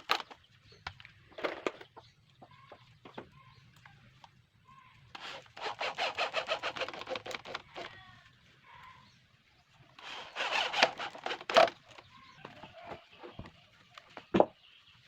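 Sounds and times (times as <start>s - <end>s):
rapid scraping on wood: 5.2s - 7.9s, 10.0s - 12.0s.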